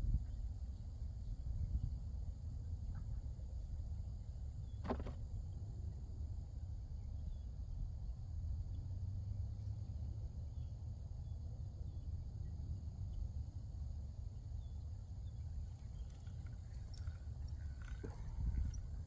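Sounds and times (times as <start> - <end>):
faint insect chirping: 15.6 - 19.0
light clicks and taps: 15.9 - 19.0.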